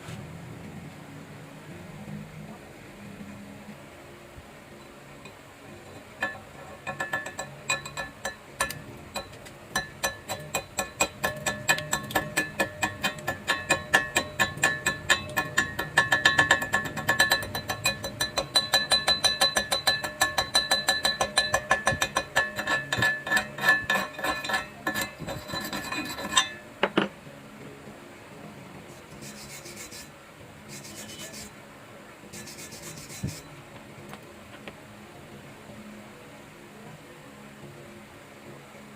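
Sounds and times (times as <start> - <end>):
faint scratchy noises: 0.0 - 9.8, 22.9 - 38.9
hand tool striking ringing steel: 6.2 - 27.0.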